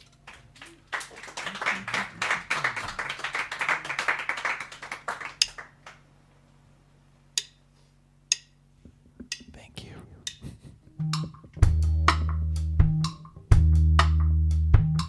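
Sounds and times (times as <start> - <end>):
crowd clapping: 0.0 - 6.1.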